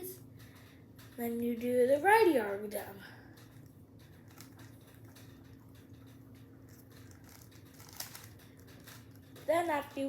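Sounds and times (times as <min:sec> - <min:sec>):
puzzle cube clicking: 0:06.7 - 0:09.0.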